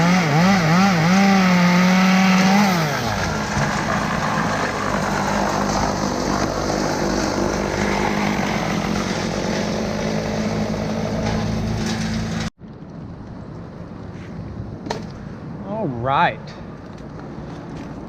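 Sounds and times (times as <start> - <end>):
chainsaw engine at full throttle: 0.0 - 11.6.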